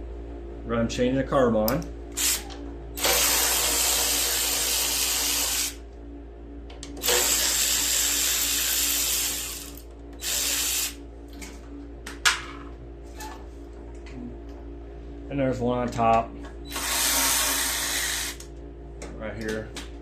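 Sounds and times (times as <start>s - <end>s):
power tool bursts: 2.2s - 5.8s, 7.0s - 11.0s, 16.7s - 18.4s.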